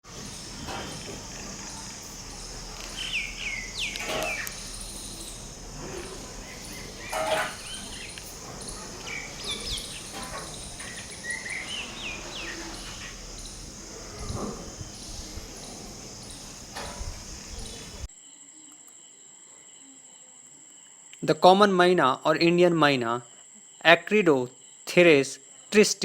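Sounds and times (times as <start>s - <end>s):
harsh bird calls: 0.0s - 18.1s
high insect drone: 0.0s - 21.6s
bird whistled calls: 2.7s - 5.4s.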